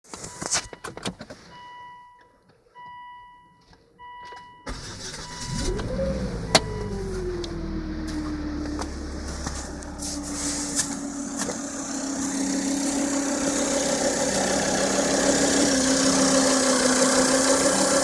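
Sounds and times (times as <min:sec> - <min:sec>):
car engine starting and idling: 0:04.6 - 0:18.0
engine whine: 0:04.7 - 0:18.0.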